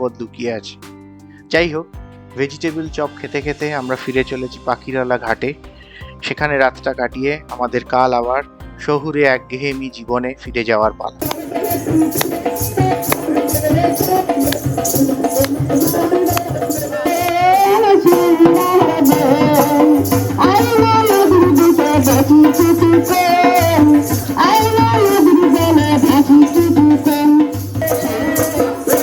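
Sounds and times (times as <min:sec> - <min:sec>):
wavering melody: 0:11.0 - 0:29.0
shaker rattling beat: 0:11.2 - 0:29.0.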